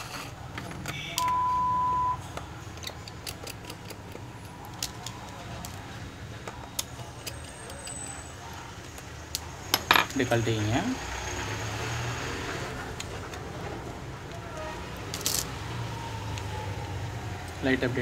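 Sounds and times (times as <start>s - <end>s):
high beep: 1.0s - 2.2s.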